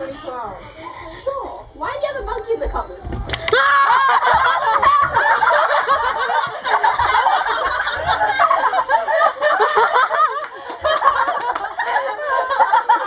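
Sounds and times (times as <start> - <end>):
people laughing and giggling: 3.4 - 13.0.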